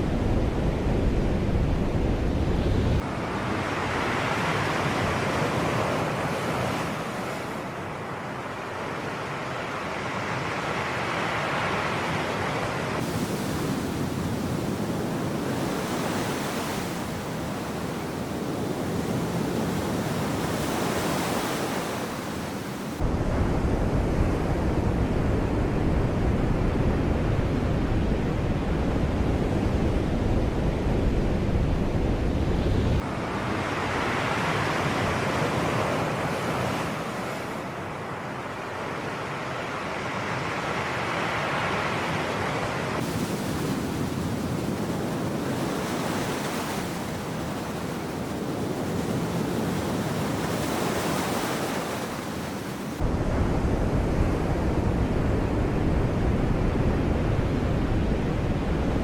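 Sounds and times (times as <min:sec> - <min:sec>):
wind rumble on microphone: 0:00.0 - 0:07.7, 0:11.9 - 0:37.7, 0:41.9 - 0:59.0
sea waves washing: 0:33.0 - 0:55.8.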